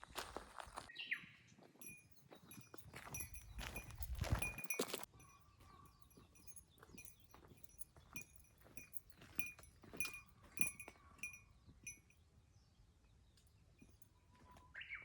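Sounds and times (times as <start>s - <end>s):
light metallic clinks: 1.8s - 12.2s, 13.2s - 14.5s.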